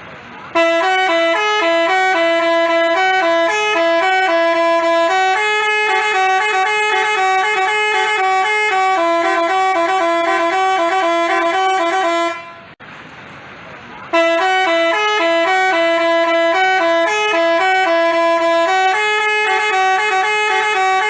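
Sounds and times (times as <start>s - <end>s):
bus horn playing a tune: 0.4s - 12.8s, 14.1s - 21.0s.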